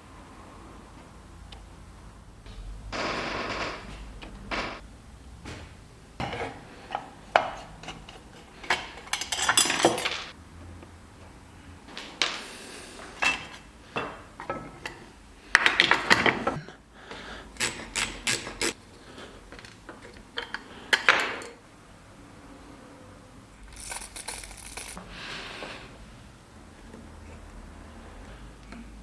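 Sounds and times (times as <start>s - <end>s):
small metal parts clinking: 9.1s - 10.4s, 23.6s - 25.0s.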